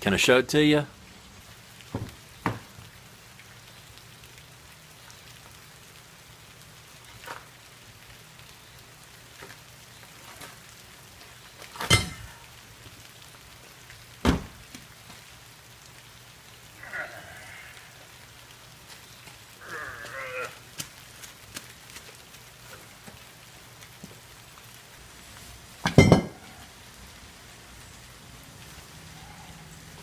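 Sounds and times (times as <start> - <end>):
low hum and hiss: 22.4 - 30.0.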